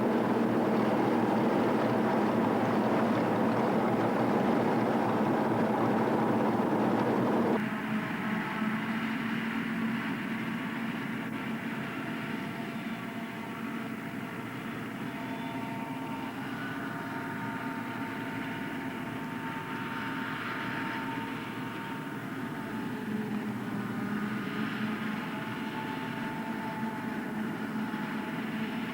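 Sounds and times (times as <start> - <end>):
harvester engine low hum: 0.0 - 7.6
high whine: 0.0 - 7.6.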